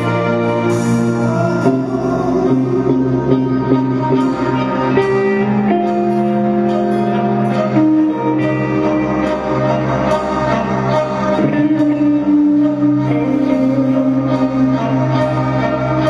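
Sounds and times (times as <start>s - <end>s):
heavy metal band playing: 0.0s - 16.0s.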